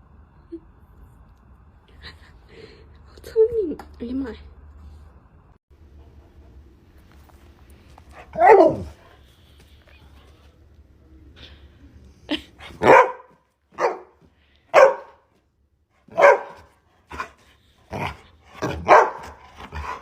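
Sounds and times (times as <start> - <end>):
dog barking: 8.2 - 9.0, 12.8 - 15.2, 16.1 - 20.0.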